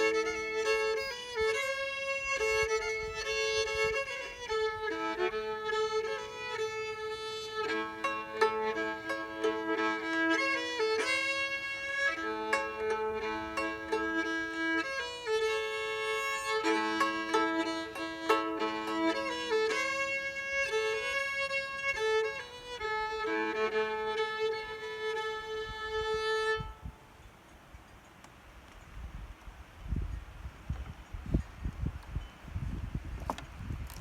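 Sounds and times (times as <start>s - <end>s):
fiddle playing: 0.0s - 27.0s.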